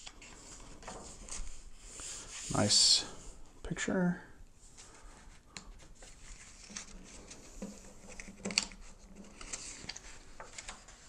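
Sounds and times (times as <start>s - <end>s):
paper crackle: 0.0s - 1.6s, 5.8s - 11.0s
magazine pages rustling: 4.7s - 11.0s.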